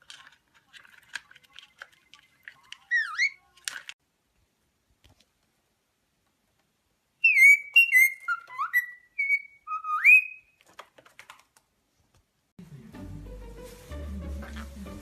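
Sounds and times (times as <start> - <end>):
parrot whistling: 7.2 - 10.5
quiet music: 12.6 - 15.0.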